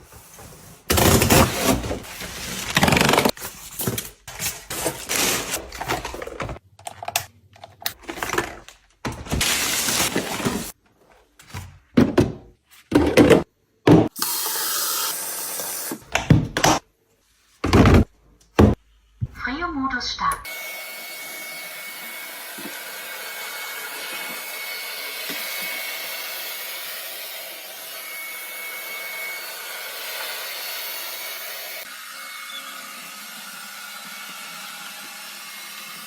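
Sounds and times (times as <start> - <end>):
household cleaning clattering: 0.0 - 6.6, 7.9 - 10.8.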